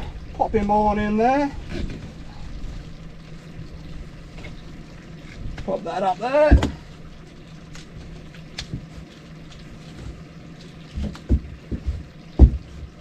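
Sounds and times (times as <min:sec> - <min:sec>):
steady low hum: 0:00.0 - 0:13.0
dull knocks and thumps: 0:06.4 - 0:06.9, 0:10.9 - 0:13.0.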